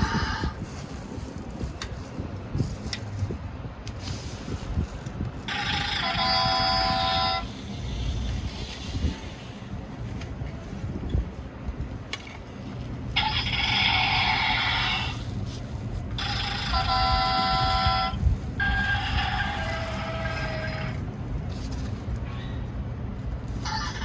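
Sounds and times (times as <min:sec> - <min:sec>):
toy truck electronic sound effect: 0:00.0 - 0:00.6, 0:05.5 - 0:09.2, 0:13.2 - 0:15.2, 0:16.2 - 0:21.0
steady low rumble: 0:00.0 - 0:24.0.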